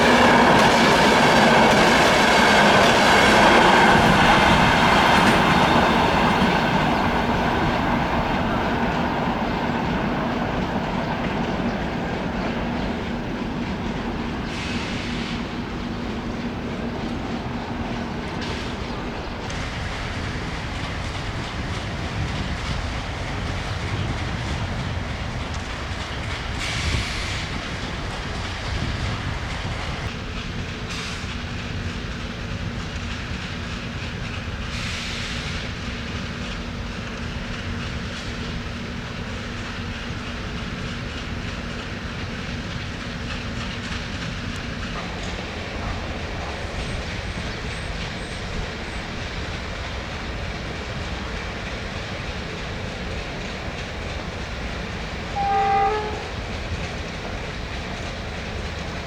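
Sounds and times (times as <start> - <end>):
train wheels clickety-clack: 0.0 - 59.0.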